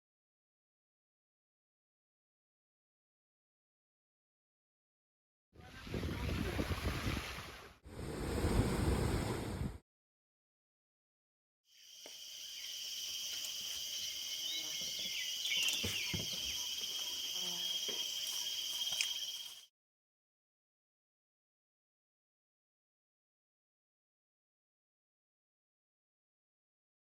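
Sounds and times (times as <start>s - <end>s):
wind rumble on microphone: 5.6s - 9.8s
high-pitched insect drone: 11.7s - 19.7s
bird chirps and clicks: 18.8s - 19.6s.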